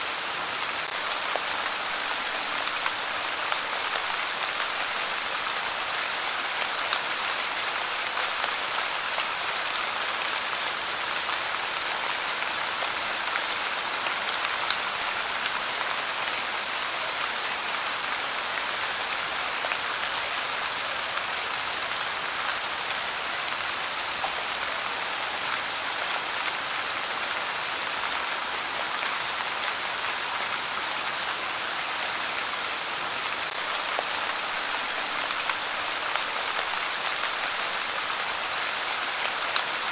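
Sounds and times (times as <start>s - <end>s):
light rain falling: 0.0s - 39.9s.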